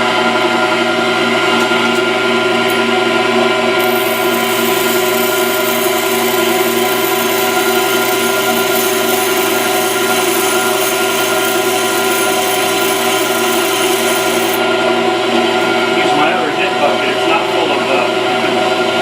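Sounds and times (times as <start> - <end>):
grinder motor hum: 0.0 - 18.6
grinding hiss of tool bit: 3.8 - 14.6.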